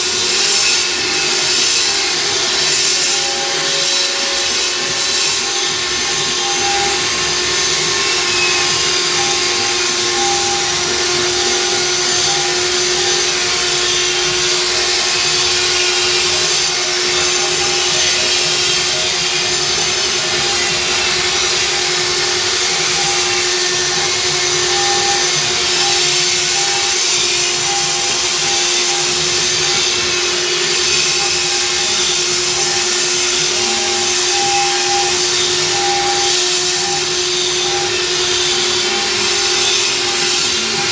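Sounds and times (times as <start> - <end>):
hiss of stone cutting: 0.0 - 40.9
router spindle whine: 0.0 - 40.9.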